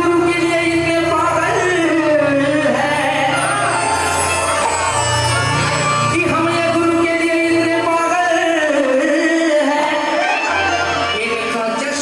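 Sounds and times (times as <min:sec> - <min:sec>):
man singing devotional song: 0:00.0 - 0:04.2, 0:06.1 - 0:12.0.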